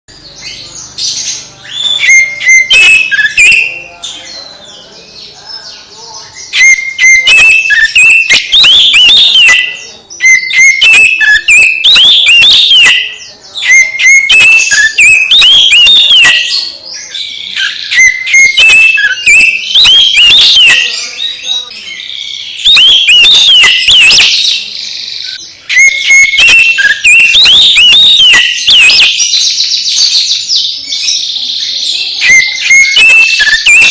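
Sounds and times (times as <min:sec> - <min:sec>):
magpie-robin singing: 0:00.1 - 0:33.9.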